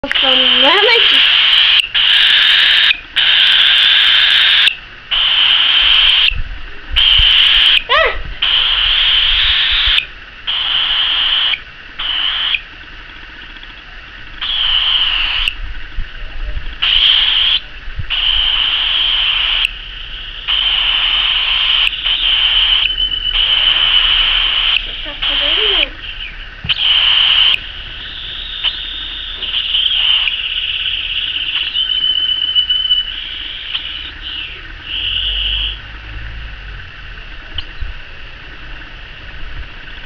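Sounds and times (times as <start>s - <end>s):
cockatiel harsh raspy calls: 0.2s - 6.3s, 7.0s - 12.6s, 14.4s - 15.6s, 16.8s - 35.8s
rising whistle-like glide: 18.2s - 35.9s.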